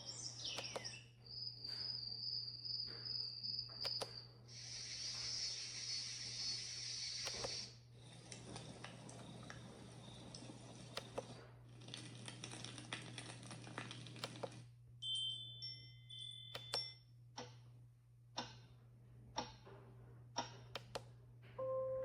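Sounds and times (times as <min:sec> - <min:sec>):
crickets chirping: 0:00.0 - 0:07.7
hissing noise with clicks: 0:03.8 - 0:09.6
chime-like tones: 0:15.0 - 0:17.0.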